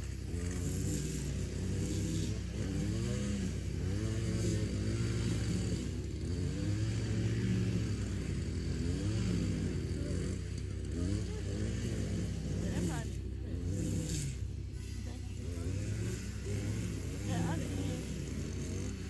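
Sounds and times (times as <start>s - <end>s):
engine revving: 0.0s - 19.0s.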